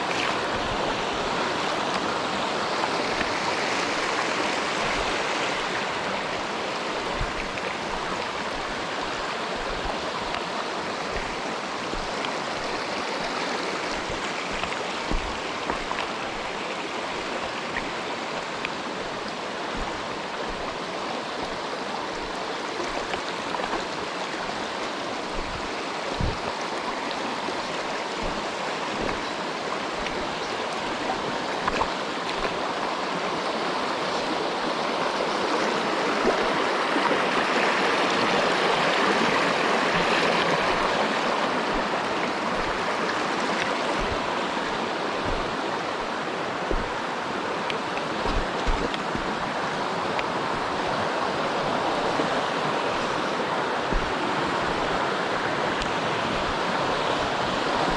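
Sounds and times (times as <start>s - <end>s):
stream rushing over rocks: 0.0s - 57.9s
soft low thumps: 7.0s - 10.4s, 11.1s - 12.8s, 13.8s - 16.6s, 19.0s - 20.8s, 25.3s - 26.6s, 28.2s - 29.3s, 41.6s - 47.1s, 48.2s - 49.5s, 53.8s - 55.0s.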